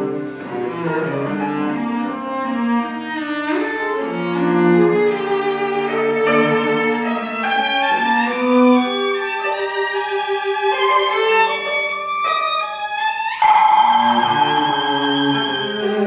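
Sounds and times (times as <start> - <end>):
bowed violin: 0.0 - 16.0
chamber ensemble playing: 13.4 - 16.0.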